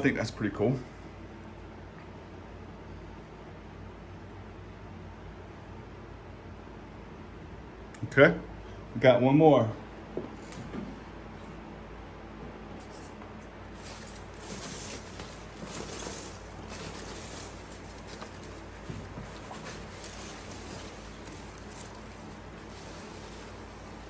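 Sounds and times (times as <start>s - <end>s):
packing material rustling: 12.8s - 24.0s.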